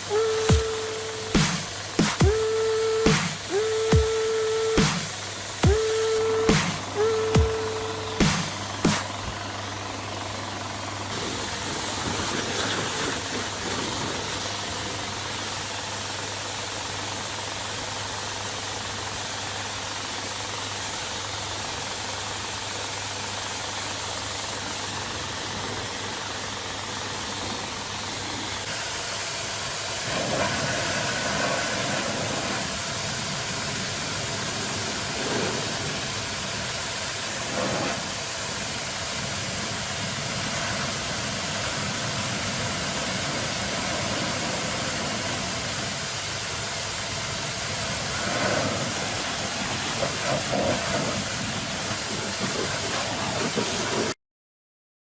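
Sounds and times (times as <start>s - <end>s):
water spray hissing: 0.0s - 9.4s, 28.2s - 54.2s
electric motor hum: 0.0s - 12.3s.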